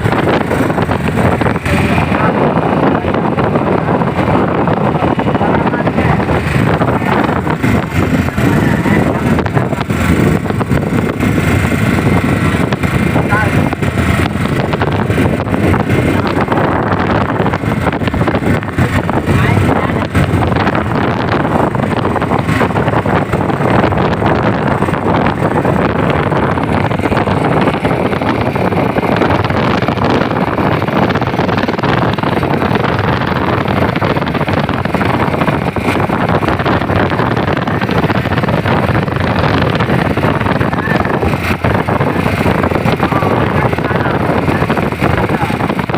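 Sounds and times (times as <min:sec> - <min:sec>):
strong wind on microphone: 0:00.0 - 0:45.9.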